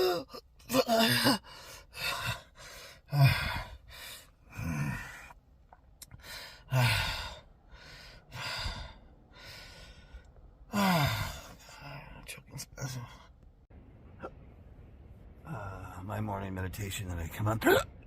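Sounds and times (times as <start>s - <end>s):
man hiccuping: 0.0s - 1.4s.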